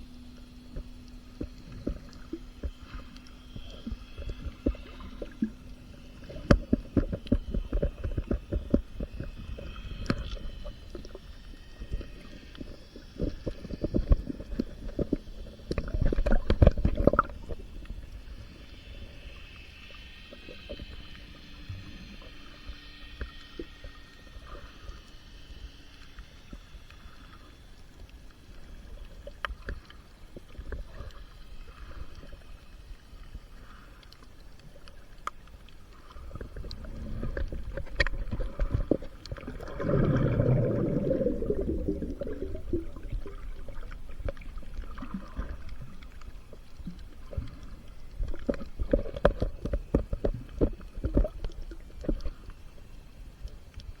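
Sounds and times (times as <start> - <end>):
water sloshing and gurgling: 0.0 - 54.0
bubbling gurgle: 0.7 - 19.2, 36.1 - 52.5.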